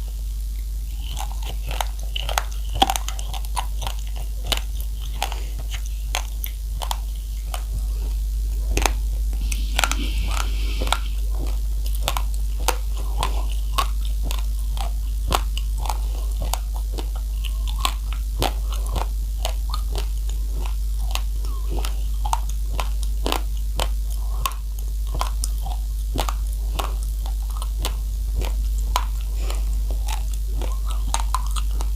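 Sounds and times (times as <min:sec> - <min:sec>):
person chewing raw rice: 0:00.0 - 0:31.9
steady low hum: 0:00.0 - 0:31.9.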